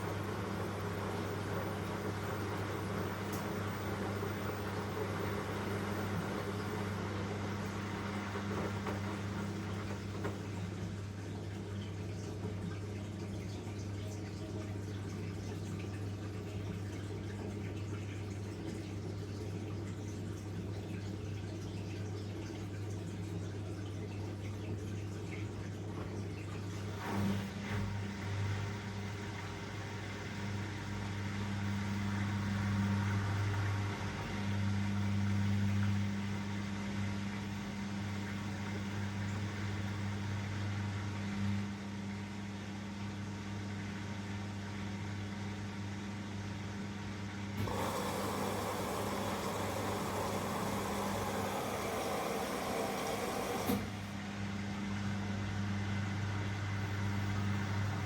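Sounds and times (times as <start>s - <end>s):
washing machine humming: 0.0s - 58.0s
water rushing: 47.6s - 54.1s.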